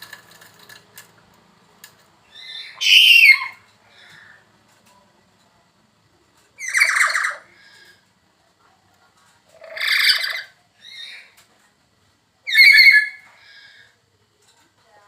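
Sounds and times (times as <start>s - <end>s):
bird squawking harshly: 2.4s - 3.6s, 6.6s - 7.5s, 9.6s - 11.3s, 12.5s - 13.2s.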